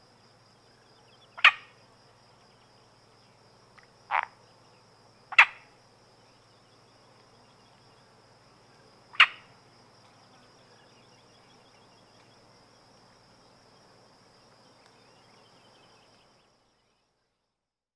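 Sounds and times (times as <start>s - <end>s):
high insect buzz: 0.0s - 17.3s
frog croak: 1.1s - 1.8s, 3.8s - 4.5s, 5.3s - 5.8s, 9.1s - 9.6s.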